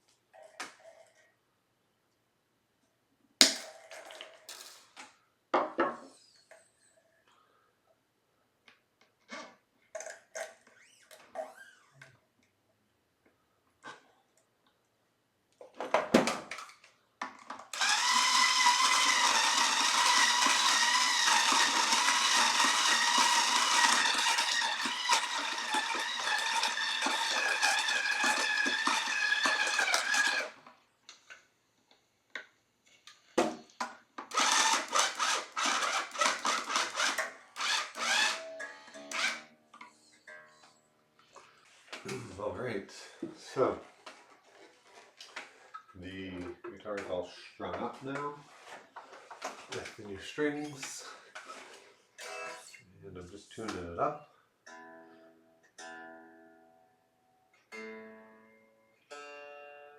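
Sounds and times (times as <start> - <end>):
power drill whining: 17.7 - 30.7, 34.2 - 39.5.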